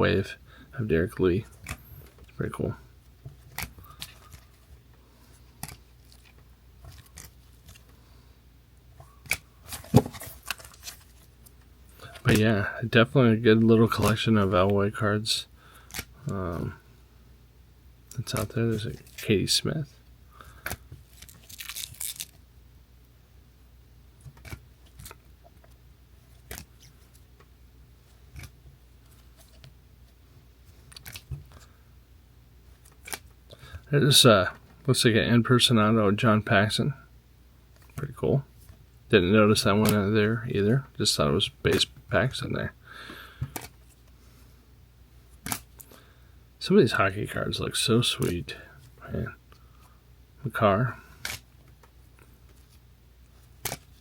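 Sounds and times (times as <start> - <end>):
faint steady hum: 0.0 - 54.0
cards clicking and rustling: 3.3 - 8.0, 9.0 - 11.3, 11.9 - 12.4, 13.8 - 14.2, 15.8 - 16.4, 18.2 - 19.3, 20.5 - 22.4, 24.2 - 27.2, 28.3 - 29.7, 30.7 - 31.7, 32.7 - 33.8, 39.6 - 40.1, 43.4 - 44.1, 45.4 - 46.0, 51.1 - 52.8, 53.4 - 54.0
trading cards clicking and snapping: 5.6 - 6.3, 15.8 - 16.1, 24.2 - 25.2, 26.4 - 26.8, 28.3 - 28.6, 30.9 - 31.6, 32.8 - 33.3, 43.4 - 43.8, 45.4 - 45.9, 51.2 - 51.4, 53.6 - 54.0.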